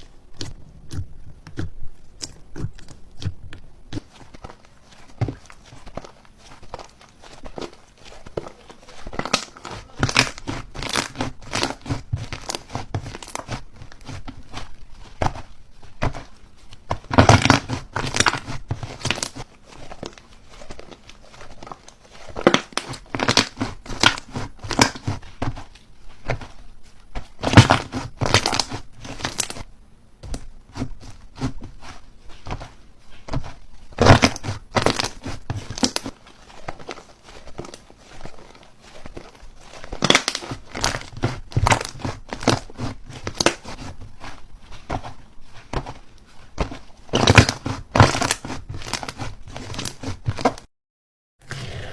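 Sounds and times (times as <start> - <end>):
slime crackling and popping: 0.3 - 16.2, 16.8 - 25.6, 27.3 - 29.6, 33.9 - 43.9, 47.1 - 50.6.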